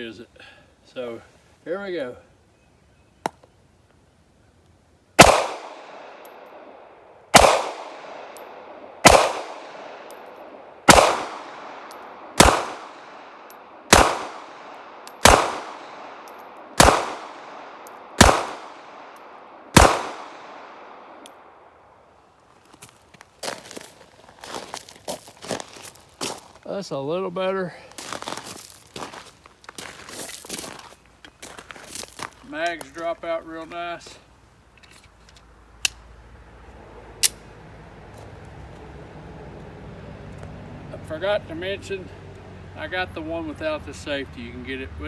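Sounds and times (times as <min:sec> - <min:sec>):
pistol shots with ringing echo: 0:05.2 - 0:21.2.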